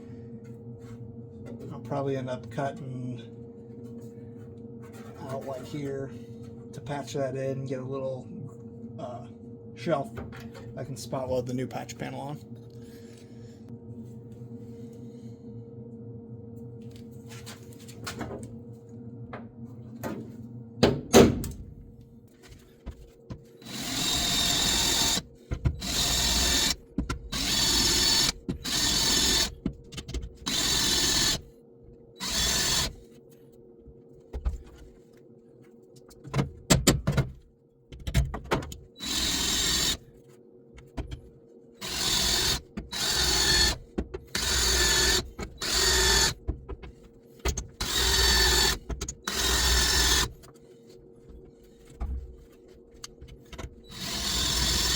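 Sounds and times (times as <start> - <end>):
electric drill cutting sheet metal: 23.6 - 29.6, 30.4 - 31.4, 32.2 - 33.0, 39.0 - 40.0, 41.8 - 46.4, 47.8 - 50.3, 53.9 - 54.9.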